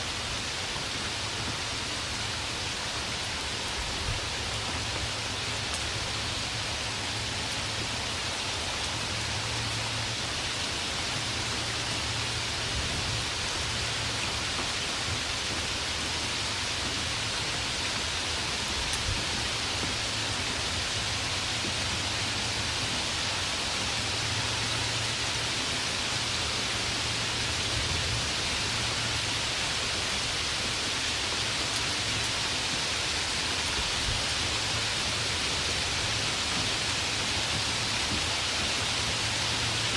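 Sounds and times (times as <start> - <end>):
steady rain hiss: 0.0 - 39.9
faint raindrop ticks: 13.6 - 22.8.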